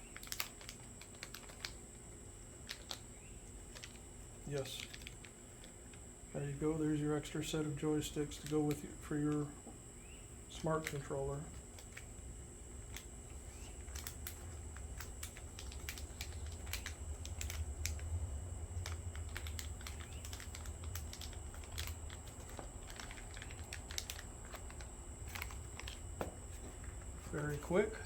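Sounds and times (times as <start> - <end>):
low steady hum: 0.0 - 28.0
small plastic parts clicking: 0.1 - 1.8, 3.7 - 4.0, 4.6 - 5.8, 13.9 - 18.1, 18.8 - 26.0.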